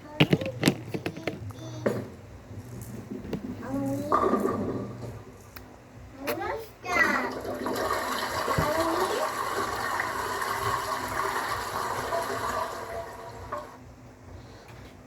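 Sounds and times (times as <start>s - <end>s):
water rushing: 7.1s - 13.8s.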